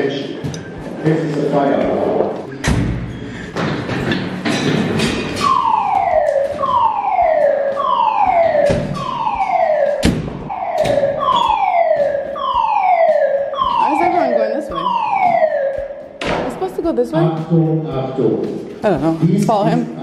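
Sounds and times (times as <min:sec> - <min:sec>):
fire alarm falling tone: 0:05.4 - 0:16.4
sharp knocks: 0:09.9 - 0:14.3, 0:15.2 - 0:16.9.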